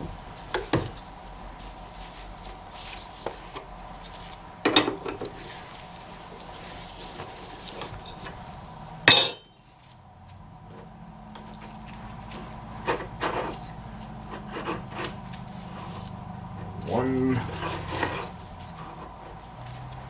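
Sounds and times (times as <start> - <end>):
metal tools clanking: 9.1 - 9.8.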